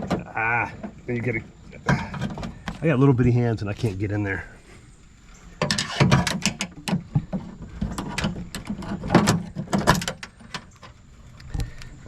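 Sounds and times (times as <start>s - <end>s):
metal latch parts rattling: 5.6s - 11.7s.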